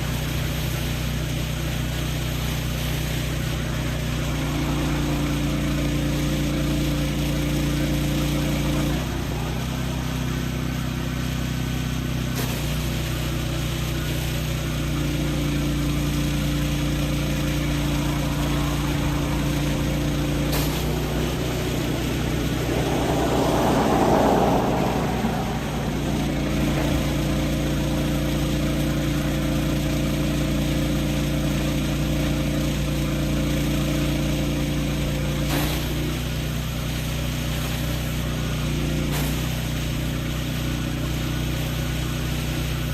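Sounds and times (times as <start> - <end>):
pressure washer engine running: 0.0 - 42.9
rushing noise: 3.6 - 7.7, 17.0 - 29.3.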